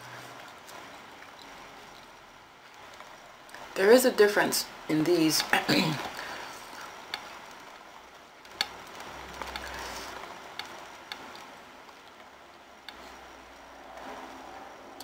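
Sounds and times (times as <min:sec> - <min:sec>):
sharp clicks: 0:08.4 - 0:11.5.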